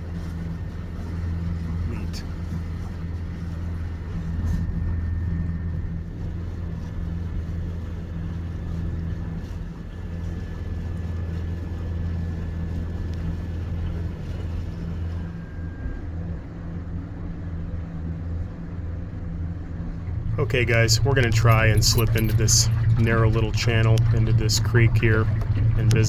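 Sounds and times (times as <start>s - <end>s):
boat motor droning: 0.0s - 26.0s
faint thin whine: 0.2s - 17.3s.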